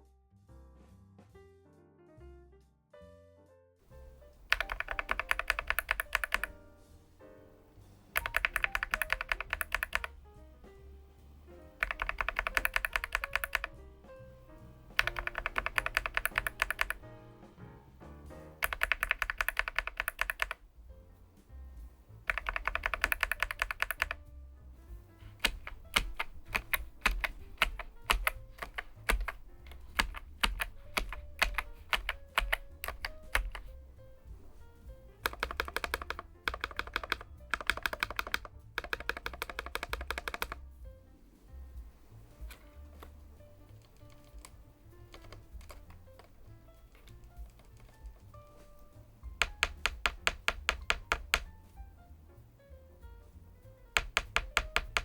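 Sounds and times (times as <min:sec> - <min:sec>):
mechanical keyboard typing: 0:04.0 - 0:06.6, 0:08.1 - 0:10.2, 0:11.7 - 0:13.8, 0:14.9 - 0:17.1, 0:18.5 - 0:20.6, 0:22.2 - 0:24.2, 0:25.2 - 0:40.6, 0:42.4 - 0:51.6, 0:53.9 - 0:55.0.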